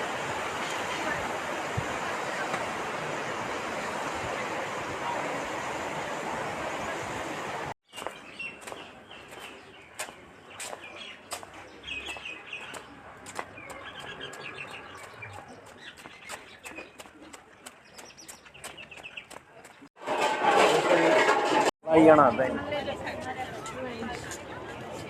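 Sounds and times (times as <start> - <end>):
small birds chirping: 7.8 - 19.9.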